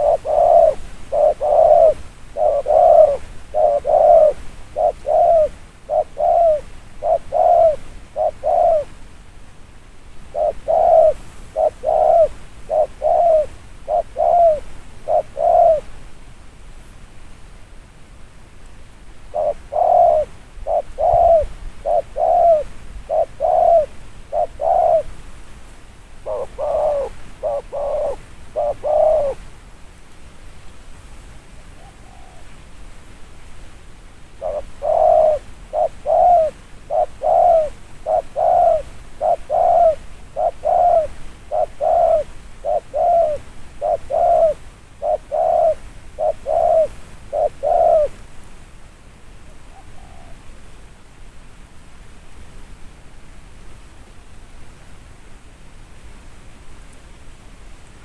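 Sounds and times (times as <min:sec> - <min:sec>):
dove cooing: 0:00.0 - 0:09.0, 0:10.3 - 0:16.0, 0:19.3 - 0:25.2, 0:26.2 - 0:29.4, 0:31.8 - 0:32.5, 0:34.4 - 0:48.2, 0:49.4 - 0:50.5.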